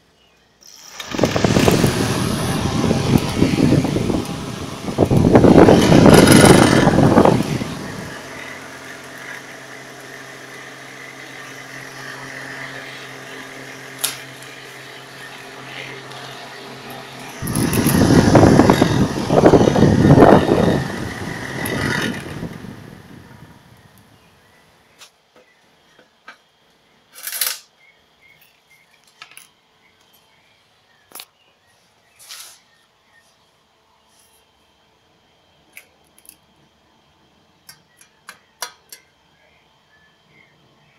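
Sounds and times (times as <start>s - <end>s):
fan motor humming: 0.6s - 26.7s.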